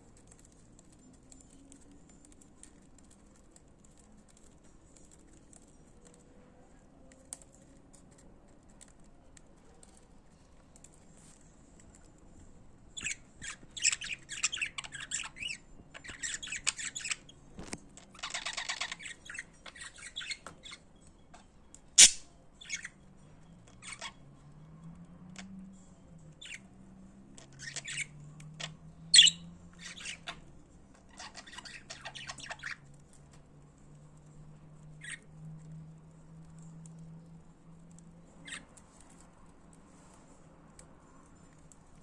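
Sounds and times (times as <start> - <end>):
sharp bird squawks: 22.0 - 22.3
budgerigars chattering and warbling: 29.2 - 30.4, 31.1 - 32.8.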